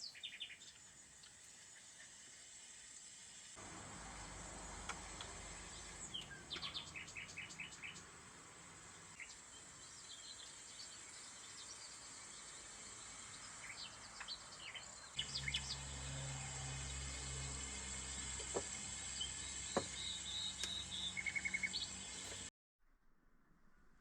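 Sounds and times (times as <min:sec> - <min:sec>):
wild birds chirping: 0:00.0 - 0:02.6, 0:03.6 - 0:22.5
faint steady hiss: 0:00.0 - 0:22.5
low steady hum: 0:03.6 - 0:22.5.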